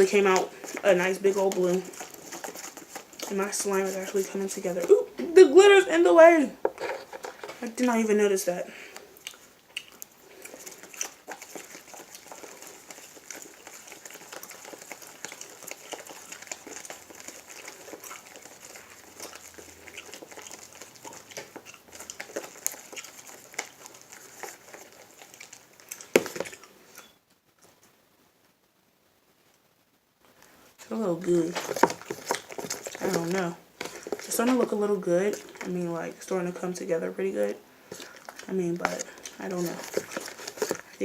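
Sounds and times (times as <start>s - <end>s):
slime clicking and crackling: 0.0s - 5.0s, 9.3s - 26.6s, 31.3s - 35.8s, 37.9s - 41.0s.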